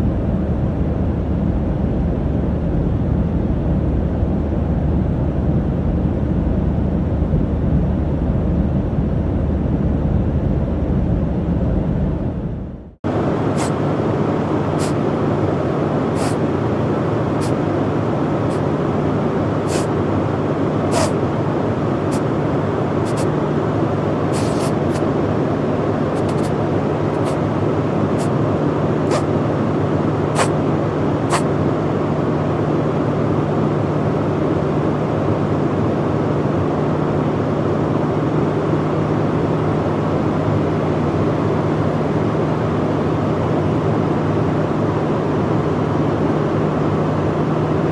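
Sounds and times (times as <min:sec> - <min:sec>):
airliner cabin drone: 0:00.0 - 0:47.9
man sniffling: 0:13.5 - 0:13.8, 0:14.8 - 0:15.1, 0:16.1 - 0:16.5, 0:19.7 - 0:20.0, 0:20.9 - 0:21.2, 0:22.1 - 0:22.3, 0:23.1 - 0:23.3, 0:24.3 - 0:25.1, 0:26.2 - 0:27.4, 0:29.1 - 0:29.3, 0:30.4 - 0:30.6, 0:31.3 - 0:31.5.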